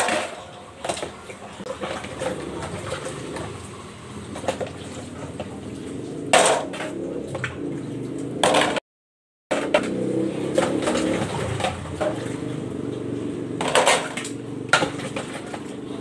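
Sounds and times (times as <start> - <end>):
splashes: 0.0 - 8.8, 9.6 - 16.0
running water: 0.3 - 8.8
plates clattering: 13.6 - 15.7.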